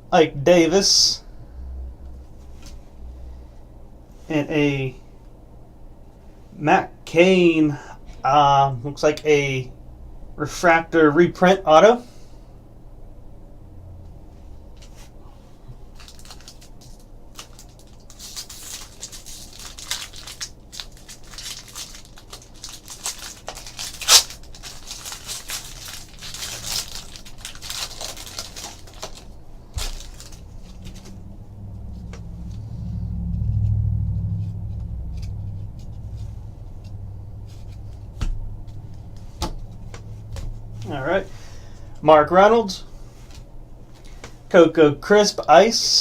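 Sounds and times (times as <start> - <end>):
low rumble: 1.2 - 4.2, 12.6 - 42.0
wrapper tearing and crinkling: 15.9 - 31.1.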